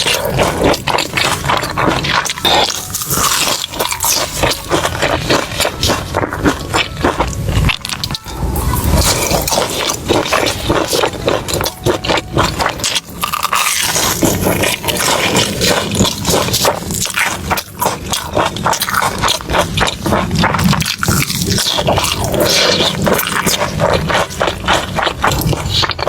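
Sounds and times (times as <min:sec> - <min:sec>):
close-miked biting and chewing: 0:00.0 - 0:26.0.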